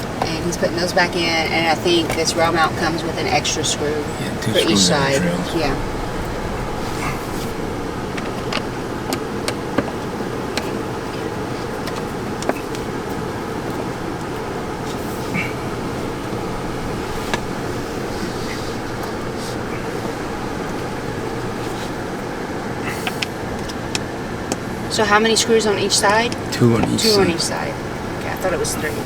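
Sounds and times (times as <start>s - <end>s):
steady low rumble: 3.3s - 10.3s.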